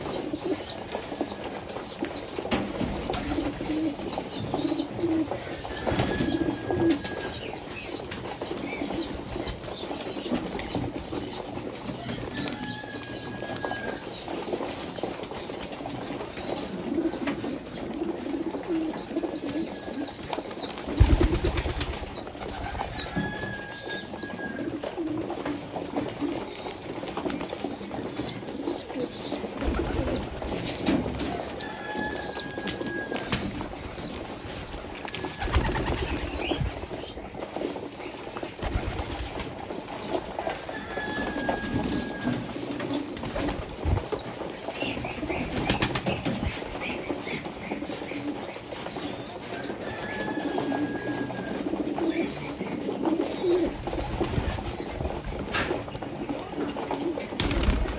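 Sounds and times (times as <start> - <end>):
pigeons cooing: 0.0 - 57.9
small birds chirping: 13.2 - 23.4
wings flapping: 19.4 - 46.7, 52.8 - 57.9.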